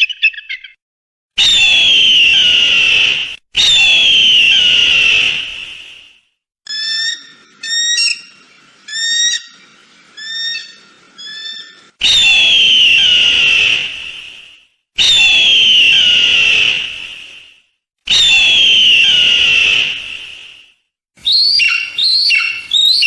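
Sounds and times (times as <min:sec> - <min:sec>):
eagle screams: 0:01.4 - 0:05.3, 0:10.2 - 0:13.8, 0:15.0 - 0:16.8, 0:18.1 - 0:19.9, 0:21.2 - 0:23.0
eagle chirps: 0:06.7 - 0:09.6, 0:10.2 - 0:12.3, 0:21.2 - 0:23.0.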